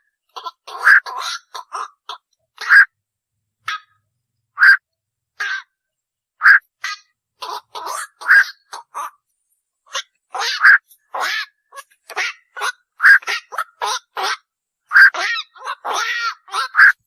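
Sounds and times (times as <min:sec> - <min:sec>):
heron harsh croaking calls: 0:00.3 - 0:03.0, 0:04.6 - 0:04.8, 0:06.4 - 0:09.2, 0:09.9 - 0:17.0.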